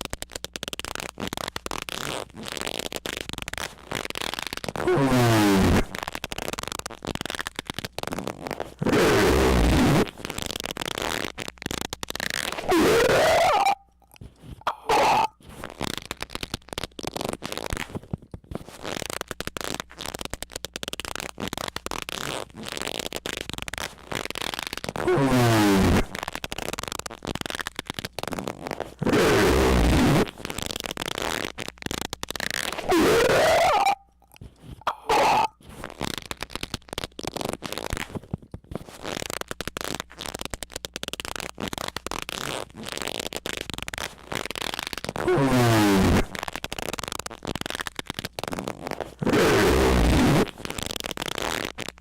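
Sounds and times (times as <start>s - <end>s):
crackling: 0.0s - 52.0s
loud distorted squeals: 12.6s - 13.8s, 14.8s - 15.3s, 32.8s - 34.1s, 34.9s - 35.5s.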